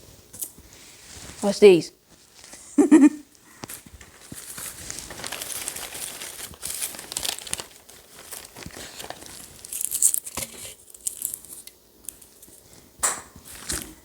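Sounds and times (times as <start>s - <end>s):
dried leaves crinkling and crackling: 3.6s - 12.8s.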